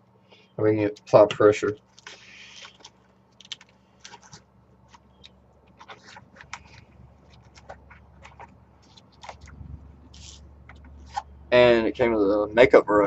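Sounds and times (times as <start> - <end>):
faint low hum: 0.0 - 13.0
plastic case handled: 1.9 - 11.3.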